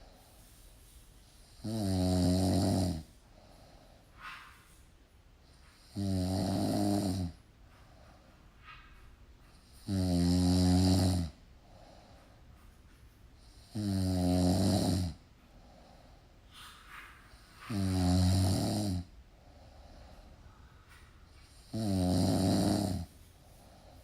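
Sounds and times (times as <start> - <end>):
quiet breathing: 0.0 - 24.0
loud snoring: 1.6 - 3.1, 5.8 - 7.4, 9.8 - 11.4, 13.5 - 15.2, 17.7 - 19.1, 21.6 - 23.1.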